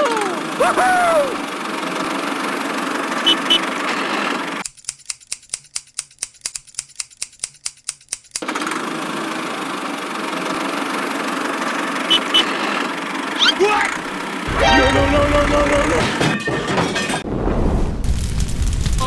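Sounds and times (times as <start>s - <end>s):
regular sharp clicking: 4.6s - 8.5s.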